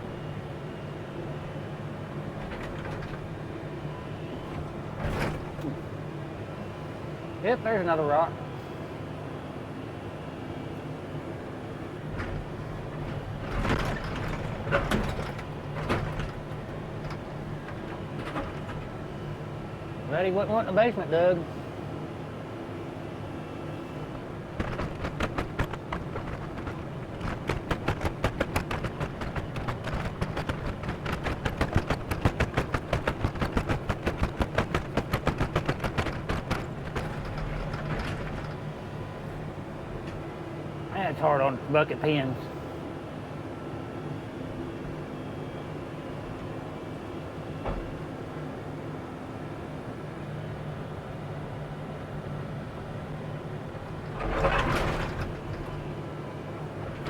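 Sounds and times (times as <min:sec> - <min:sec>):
excavator engine running: 0:00.0 - 0:08.0, 0:09.9 - 0:41.7, 0:42.6 - 0:57.0
bucket clanking on rocky ground: 0:24.6 - 0:38.7, 0:54.0 - 0:56.0.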